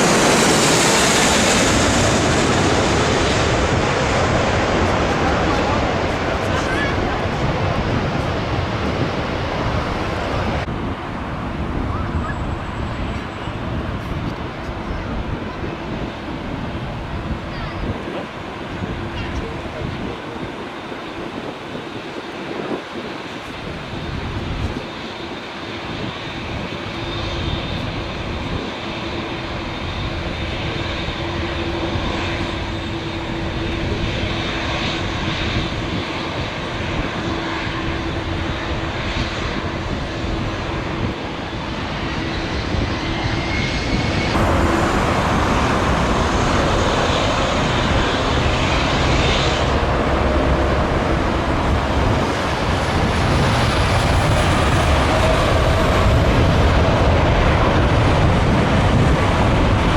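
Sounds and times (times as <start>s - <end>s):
jet engines roaring: 0.0s - 59.9s.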